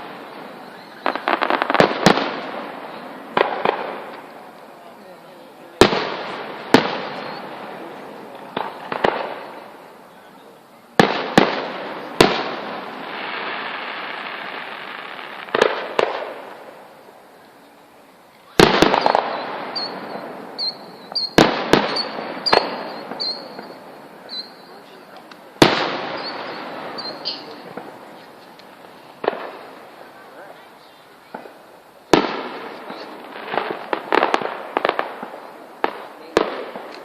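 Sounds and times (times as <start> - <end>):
fireworks bangs: 0.0 - 17.2, 18.4 - 37.0.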